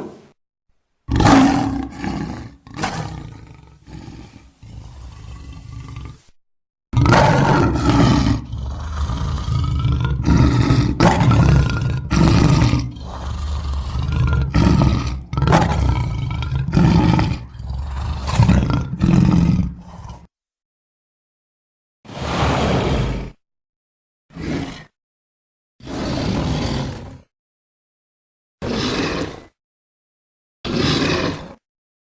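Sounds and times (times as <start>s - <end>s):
big cat roars and snarls: 1.1s - 20.3s, 22.1s - 23.4s, 24.3s - 25.0s, 25.8s - 27.3s, 28.6s - 29.6s, 30.6s - 31.7s.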